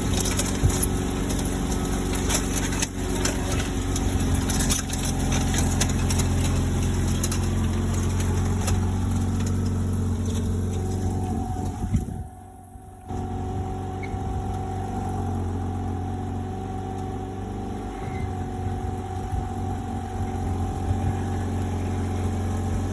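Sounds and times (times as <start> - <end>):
tyre grinding: 0.0 - 12.3
car engine running: 0.0 - 22.9
road noise: 0.0 - 22.9.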